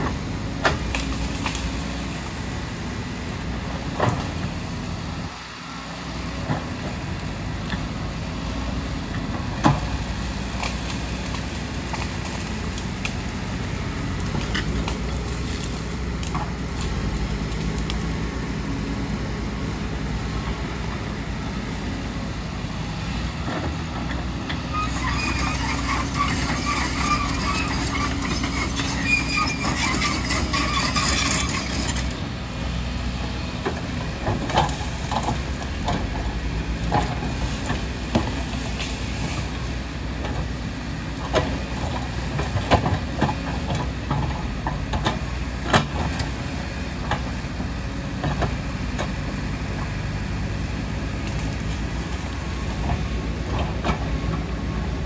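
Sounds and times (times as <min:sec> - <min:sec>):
excavator diesel engine running: 0:00.0 - 0:55.0
high metallic squeal: 0:24.6 - 0:32.2.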